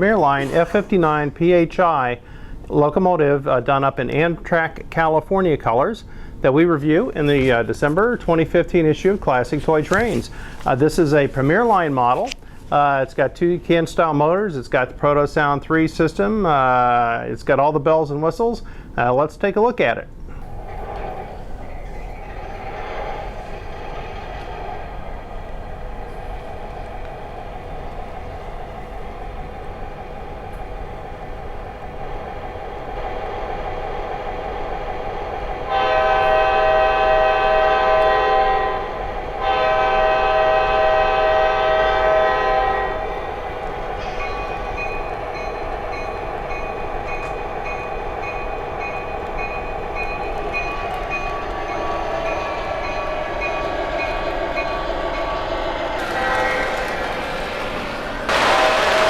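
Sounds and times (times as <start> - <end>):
train horn blasts: 35.6 - 43.4, 56.0 - 59.0.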